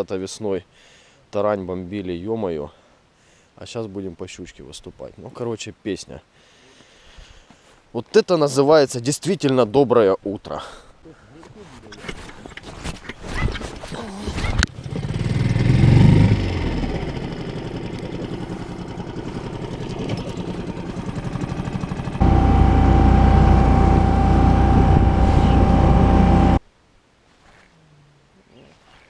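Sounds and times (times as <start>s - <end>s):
outboard motor running: 14.8s - 26.6s
high motor whine: 20.3s - 26.6s.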